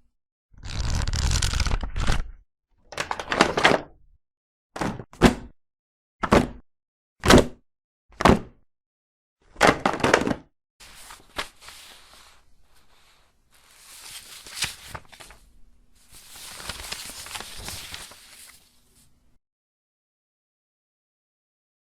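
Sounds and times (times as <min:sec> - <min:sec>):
paper rustling and crinkling: 0:10.8 - 0:19.1.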